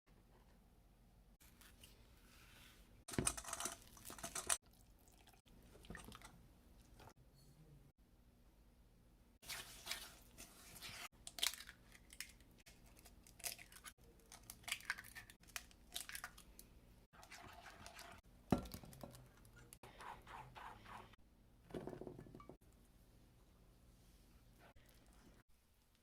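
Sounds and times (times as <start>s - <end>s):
scraping batter: 9.4s - 11.2s, 18.8s - 22.6s.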